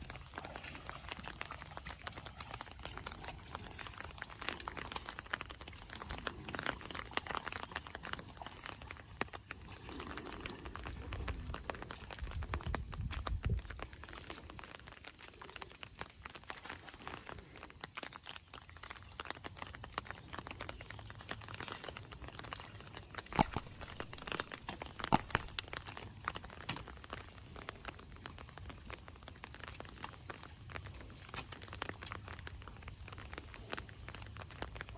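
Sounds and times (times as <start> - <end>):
footsteps on wet ground: 0.0 - 34.9
high-pitched insect chorus: 17.1 - 30.7
scattered ticks: 20.2 - 26.7
sharp clicks: 23.3 - 25.9.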